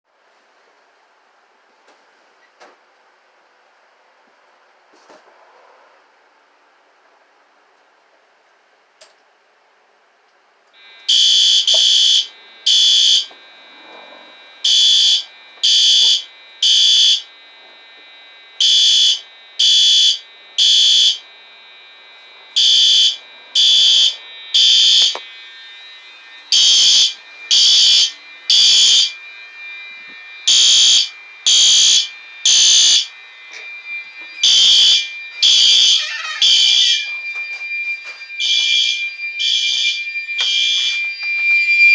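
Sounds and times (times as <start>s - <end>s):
smoke alarm beeping: 10.7s - 41.9s.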